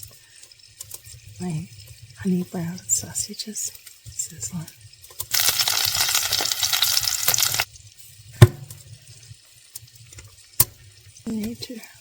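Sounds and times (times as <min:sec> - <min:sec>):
sausages sizzling: 0:00.0 - 0:12.0
sharp knock: 0:08.4 - 0:08.8.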